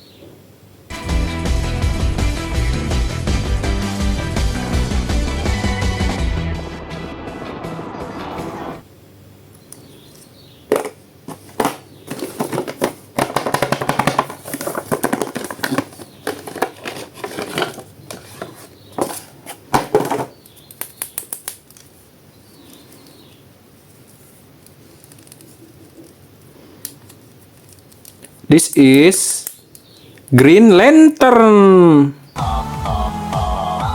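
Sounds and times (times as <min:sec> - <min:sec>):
plastic packaging crinkling: 0:10.7 - 0:22.0, 0:23.9 - 0:28.5.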